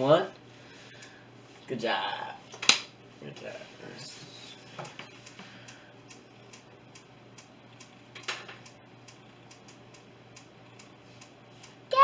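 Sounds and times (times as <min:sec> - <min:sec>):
faint steady ticking: 0:00.4 - 0:01.2, 0:04.8 - 0:11.9.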